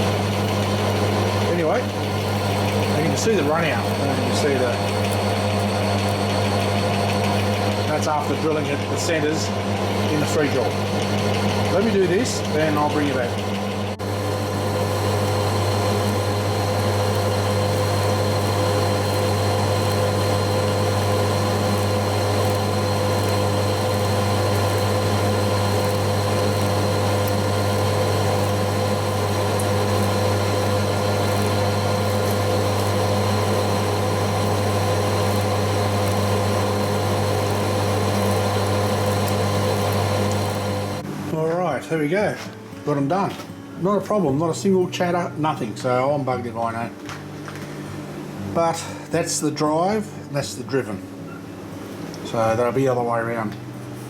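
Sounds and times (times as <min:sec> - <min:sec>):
metal lathe running: 0:00.0 - 0:41.5.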